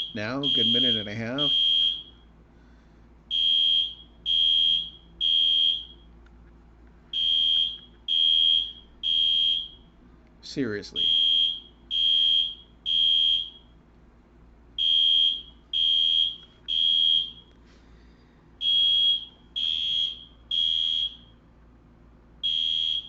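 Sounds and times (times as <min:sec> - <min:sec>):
fire alarm beeping: 0:00.0 - 0:02.3, 0:03.3 - 0:06.2, 0:07.1 - 0:10.0, 0:11.0 - 0:13.8, 0:14.8 - 0:17.6, 0:18.6 - 0:21.5, 0:22.4 - 0:23.0.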